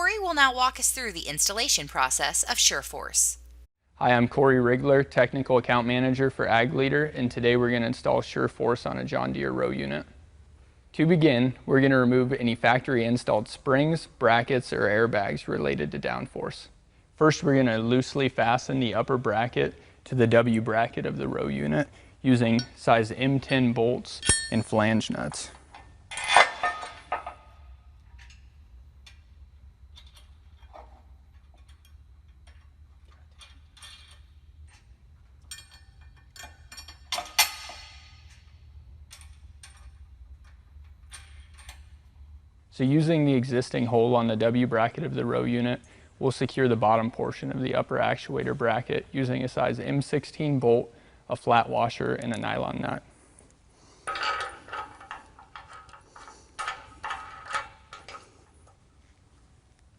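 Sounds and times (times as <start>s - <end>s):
sharp metal clank: 24.2s - 24.8s, 35.4s - 38.5s
light metallic clicks and clinks: 24.2s - 29.3s, 29.9s - 42.1s.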